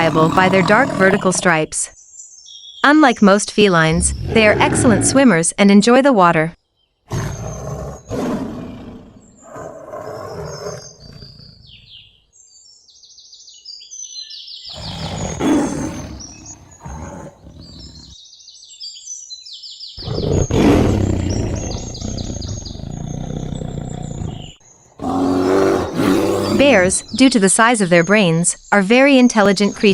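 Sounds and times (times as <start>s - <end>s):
tiger roaring: 0.0s - 1.6s, 4.0s - 5.2s, 7.1s - 11.8s, 14.7s - 18.2s, 20.0s - 27.1s
birds chirping: 0.0s - 29.9s.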